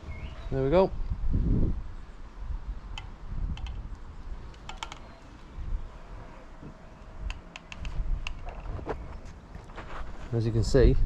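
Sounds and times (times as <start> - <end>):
small metal parts clicking: 4.5 - 5.1.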